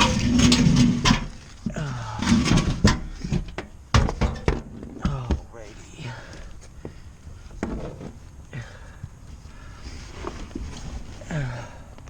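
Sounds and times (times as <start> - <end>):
tools and parts knocking and clunking: 0.0 - 5.6, 6.3 - 8.2.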